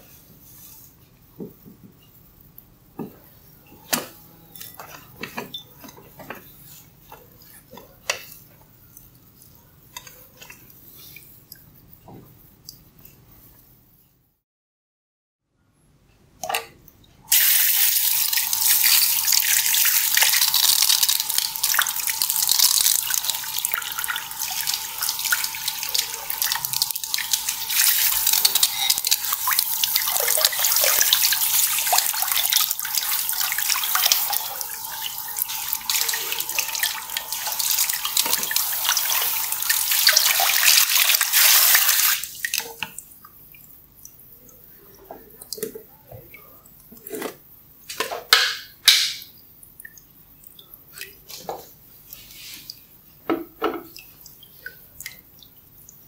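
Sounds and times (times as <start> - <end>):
tap water running into sink: 17.3 - 42.9.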